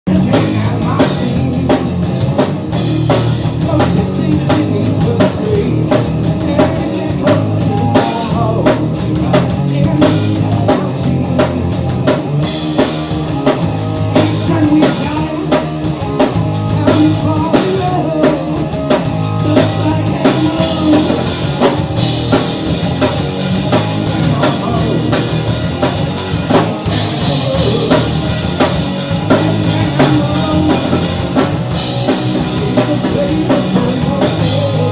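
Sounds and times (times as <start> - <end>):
rock music: 0.0 - 34.9.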